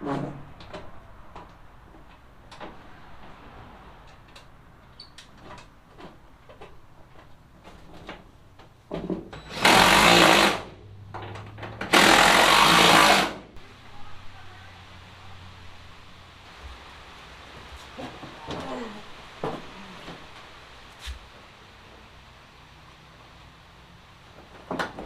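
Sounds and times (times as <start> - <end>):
power tool bursts: 9.5 - 10.8, 11.8 - 13.5.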